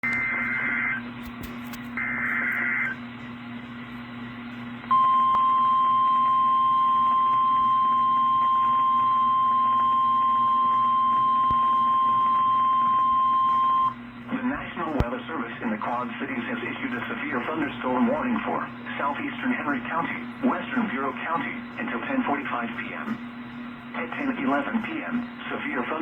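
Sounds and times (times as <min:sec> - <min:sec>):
steady radio hum: 0:00.0 - 0:26.0
steady loud alarm tone: 0:04.9 - 0:14.0.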